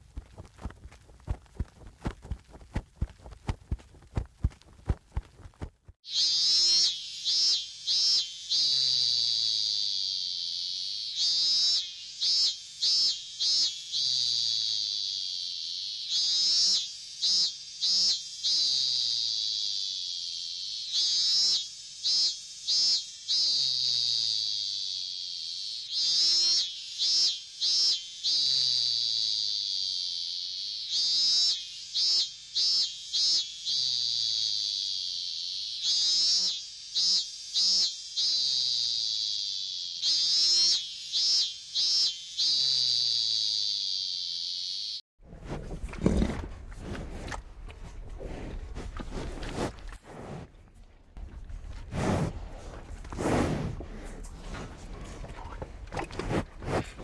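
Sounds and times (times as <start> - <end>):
high-pitched buzzing animal call: 6.1 - 45.0.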